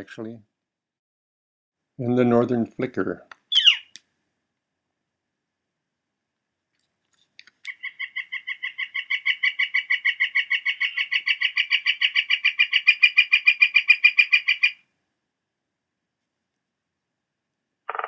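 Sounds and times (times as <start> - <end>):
woodpecker long call: 3.5 - 3.9, 7.7 - 14.9.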